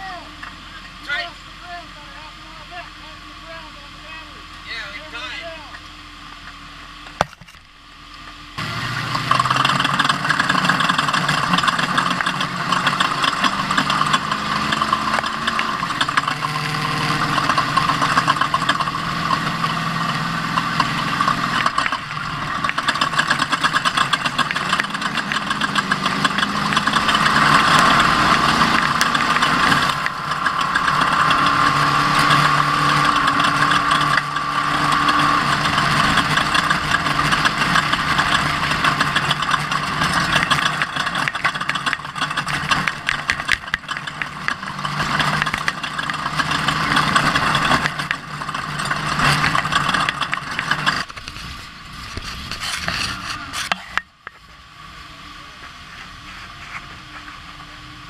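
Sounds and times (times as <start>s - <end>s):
steady rushing noise: 6.7s - 58.0s
truck engine revving while driving: 8.4s - 53.7s.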